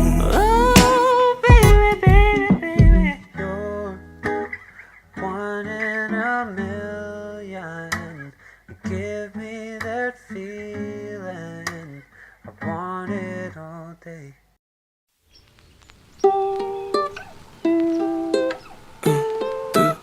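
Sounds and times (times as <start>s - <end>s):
wordless singing: 0.0s - 4.0s, 5.2s - 14.4s, 17.5s - 20.0s
pop song with guitar: 0.0s - 14.3s, 16.6s - 20.0s.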